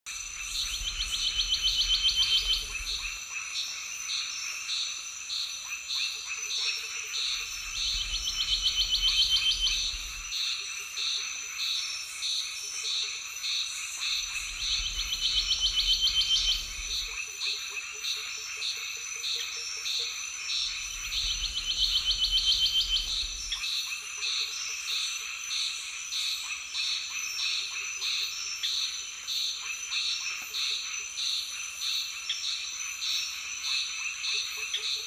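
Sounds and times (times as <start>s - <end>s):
high-pitched insect drone: 0.1s - 34.9s.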